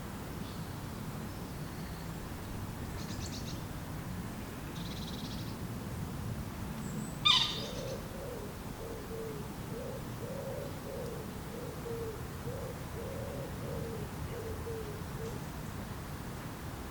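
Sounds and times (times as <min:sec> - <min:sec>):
steady low background noise: 0:00.0 - 0:16.9
loud sharp bird call: 0:07.2 - 0:08.0
low hooting bird calls: 0:07.2 - 0:15.4.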